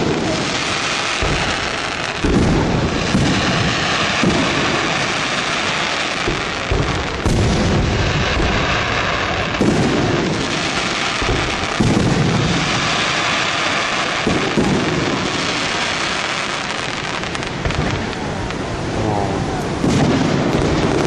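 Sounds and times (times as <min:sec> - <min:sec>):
fireworks booming: 0:00.0 - 0:21.0
waterfall roaring: 0:17.5 - 0:20.0.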